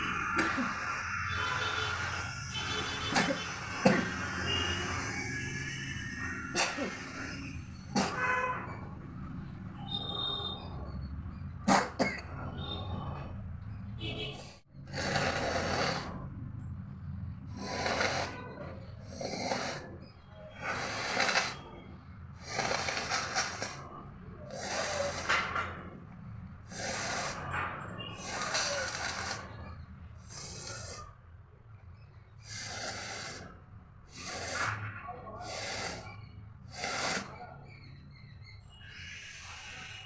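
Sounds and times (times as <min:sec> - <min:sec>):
person blowing nose: 0:20.6 - 0:21.6, 0:24.5 - 0:25.3, 0:26.7 - 0:27.4, 0:28.2 - 0:29.6, 0:30.3 - 0:31.1, 0:32.5 - 0:33.4, 0:34.1 - 0:34.8, 0:35.4 - 0:36.1, 0:36.7 - 0:37.4.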